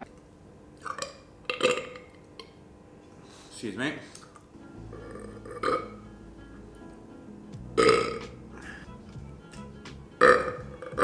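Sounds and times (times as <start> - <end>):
man belching: 4.9 - 6.0, 7.8 - 8.9, 10.2 - 11.0.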